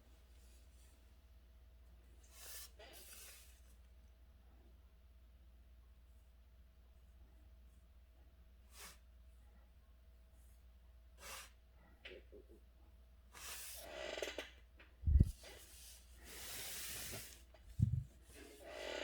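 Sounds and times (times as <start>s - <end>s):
paper rustling swishes: 15.1s - 18.4s.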